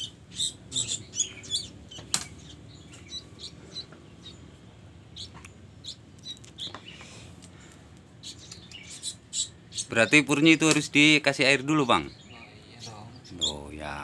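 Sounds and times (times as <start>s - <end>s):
chicks chirping: 0.0s - 7.5s, 8.2s - 14.0s.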